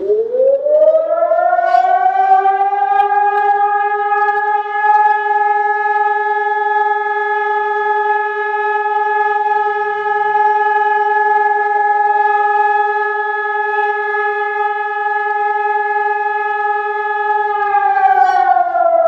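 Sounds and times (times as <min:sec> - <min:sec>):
fire siren steady tone: 0:00.0 - 0:19.0.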